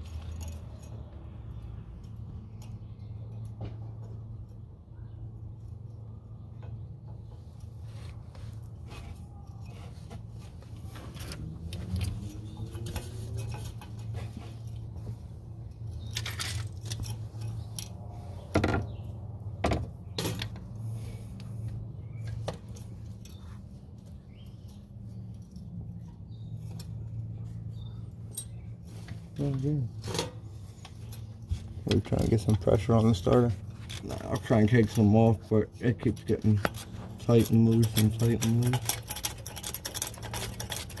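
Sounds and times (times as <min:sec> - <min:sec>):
hand tools clinking on metal: 0:00.0 - 0:01.2, 0:10.8 - 0:18.0, 0:28.1 - 0:30.4, 0:31.0 - 0:41.0.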